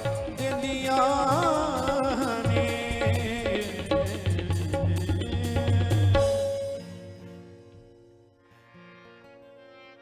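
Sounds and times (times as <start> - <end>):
drum hit: 0.0 - 7.1
worship song backing music: 0.0 - 8.0.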